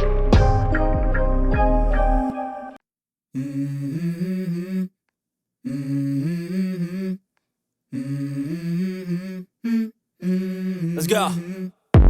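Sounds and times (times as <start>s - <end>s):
person humming a melody: 3.4s - 4.9s, 5.7s - 7.2s, 7.9s - 11.8s.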